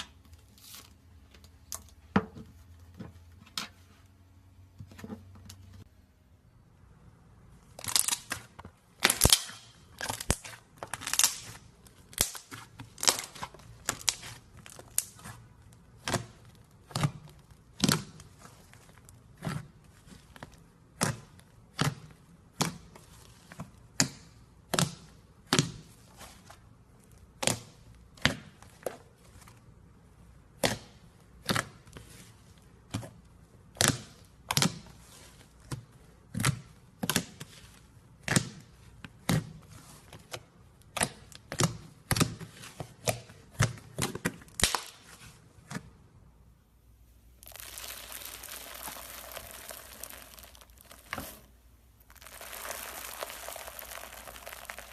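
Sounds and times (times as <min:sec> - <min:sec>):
slime crackling hiss: 0:47.4 - 0:54.9.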